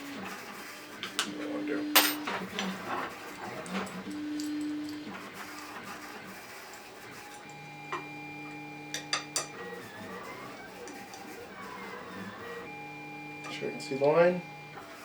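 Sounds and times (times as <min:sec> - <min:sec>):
faint background music: 0:09.0 - 0:15.0.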